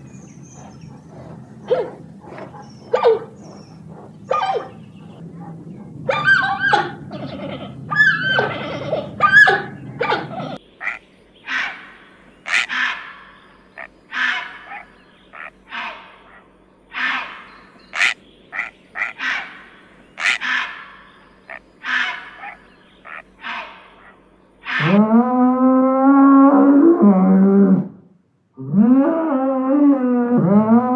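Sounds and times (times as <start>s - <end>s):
dense background noise: 0.0s - 24.6s
harsh rasping animal calls: 0.0s - 25.2s
gliding animal calls: 0.0s - 27.6s.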